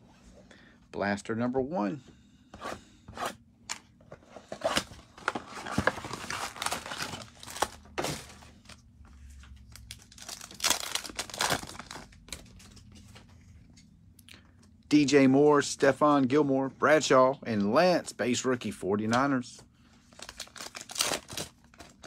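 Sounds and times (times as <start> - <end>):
card packs ripping open: 4.7 - 8.4, 9.7 - 12.6, 20.1 - 22.0
plastic wrap crinkling: 5.2 - 8.3, 9.7 - 12.8, 20.1 - 22.0.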